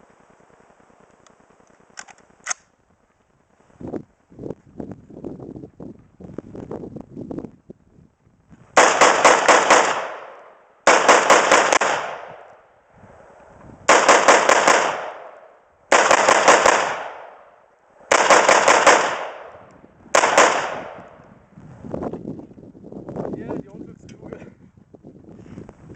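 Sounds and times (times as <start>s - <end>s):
gunshot echo: 8.8s - 12.5s, 13.9s - 17.5s, 18.1s - 21.1s
rifle shots: 8.8s - 12.5s, 13.9s - 17.5s, 18.1s - 21.2s.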